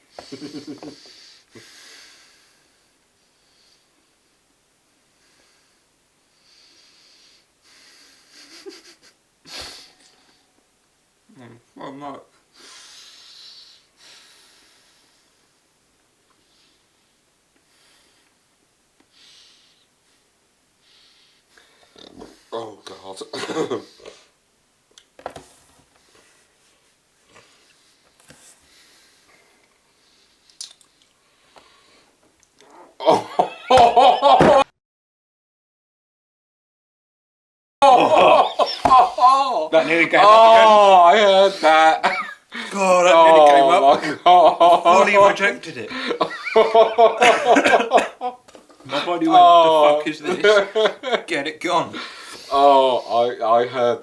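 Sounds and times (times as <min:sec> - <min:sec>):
person sniffing: 0:09.5 - 0:10.0, 0:52.0 - 0:52.6
person chewing: 0:30.5 - 0:31.2
person breathing: 0:31.2 - 0:32.2, 0:41.5 - 0:42.8, 0:45.9 - 0:47.0, 0:52.0 - 0:52.6
person breathing hard through nose: 0:52.0 - 0:52.6.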